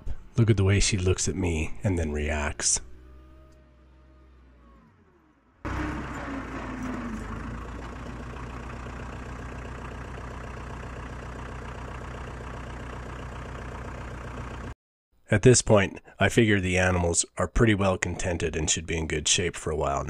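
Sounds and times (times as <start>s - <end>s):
vehicle engine idling: 0.0s - 14.8s.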